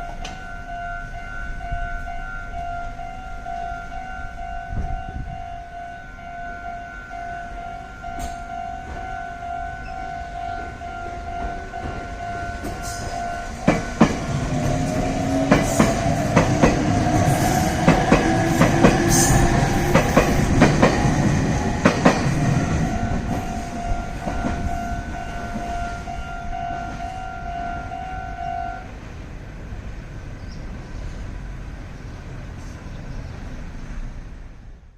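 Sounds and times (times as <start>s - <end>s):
level crossing alarm pulsing: 0.0s - 28.9s
train wheels clacking: 8.1s - 9.0s, 11.4s - 27.7s.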